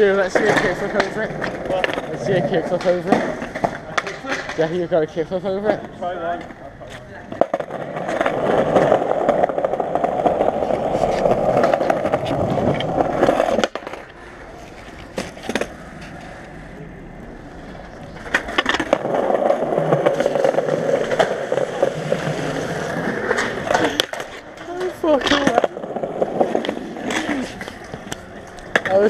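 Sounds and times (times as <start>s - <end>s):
skateboard wheels rolling on pavement: 0.0s - 29.0s.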